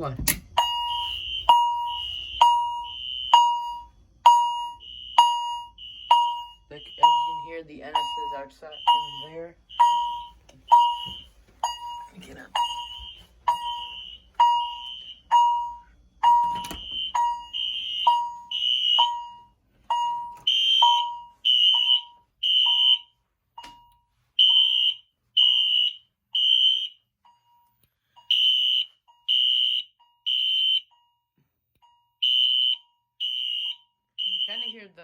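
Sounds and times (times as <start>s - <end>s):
fire alarm horn blasts: 0.4s - 27.1s, 28.1s - 31.0s, 32.2s - 35.0s
ringing chime: 0.6s - 21.4s.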